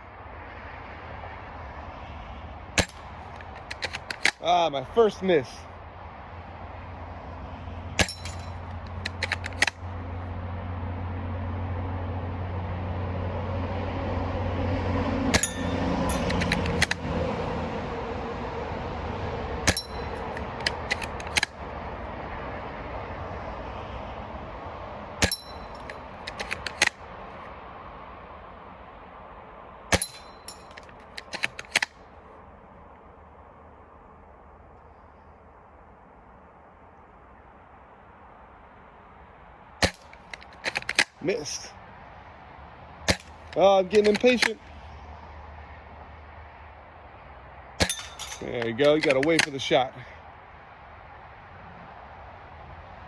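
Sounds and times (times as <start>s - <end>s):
clicks and clinks of bolt: 2.8s - 4.5s, 8.0s - 9.9s, 15.3s - 17.5s, 19.7s - 21.6s, 25.2s - 27.0s, 29.9s - 32.0s, 39.8s - 41.7s, 43.1s - 44.6s, 47.8s - 49.8s
airsoft rifle shots: 2.8s - 4.6s, 8.0s - 9.8s, 15.3s - 17.0s, 19.7s - 21.6s, 25.2s - 27.0s, 29.9s - 31.9s, 39.8s - 41.6s, 43.1s - 44.6s, 47.8s - 49.6s
low background hum: 46.8s - 50.8s.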